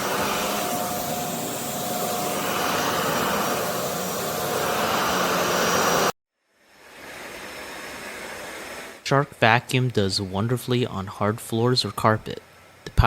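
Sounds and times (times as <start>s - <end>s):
upright vacuum whining: 0.0s - 6.2s.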